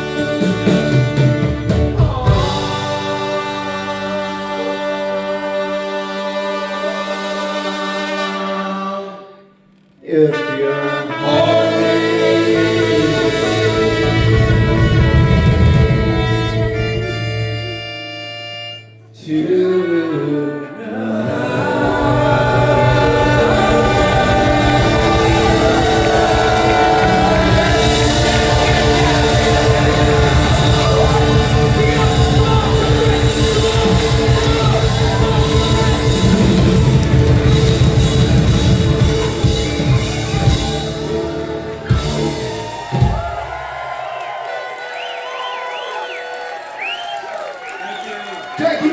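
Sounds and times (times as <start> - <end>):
live rock band playing: 0.0 - 5.4, 11.2 - 19.0, 21.5 - 46.6
person singing: 1.4 - 18.0, 19.1 - 43.2.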